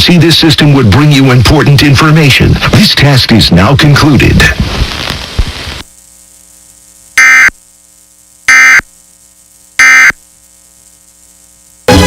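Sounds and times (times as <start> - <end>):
faint steady hum: 0.0 - 12.0
warbling digital data bursts: 9.8 - 10.2.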